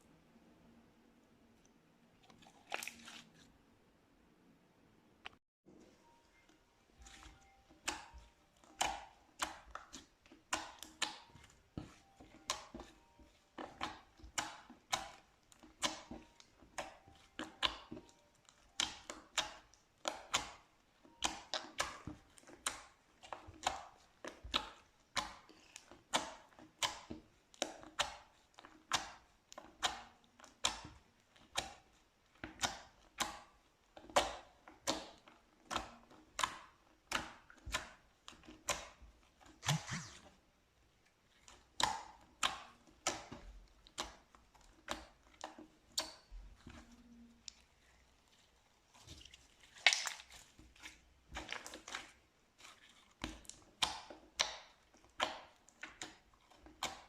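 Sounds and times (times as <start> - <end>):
slime crackling pops: 49.8 - 50.4.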